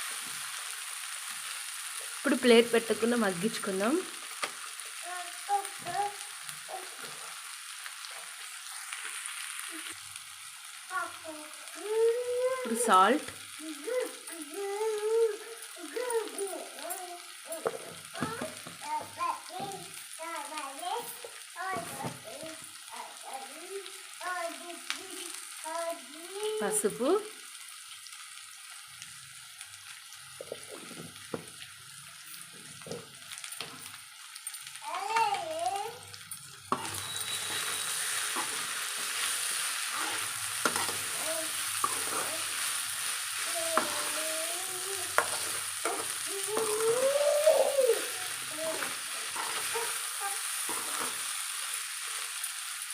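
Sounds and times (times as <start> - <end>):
vegetables sizzling in hot oil: 0.0 - 52.9.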